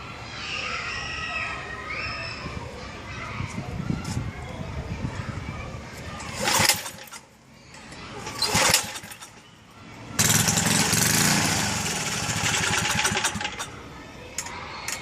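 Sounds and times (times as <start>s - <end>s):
recoil starter pulls: 6.2s - 9.5s, 10.2s - 13.8s
small engine running: 8.4s - 9.4s, 10.2s - 13.8s.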